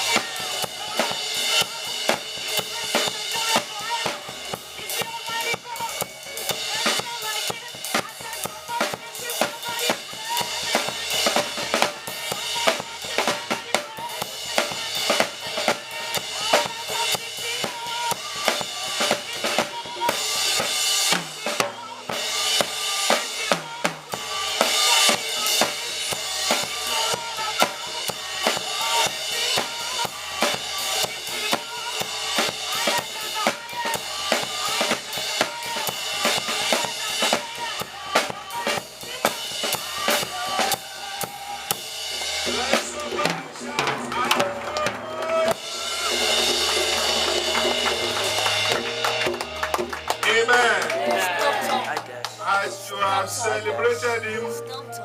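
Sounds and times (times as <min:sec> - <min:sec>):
drum kit beat: 0:00.0 - 0:55.0
live gospel band: 0:00.0 - 0:55.0.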